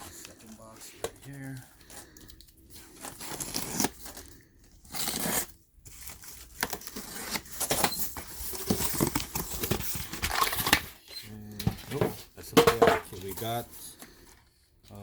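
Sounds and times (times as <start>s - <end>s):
packaging tearing and crinkling: 2.8s - 11.0s.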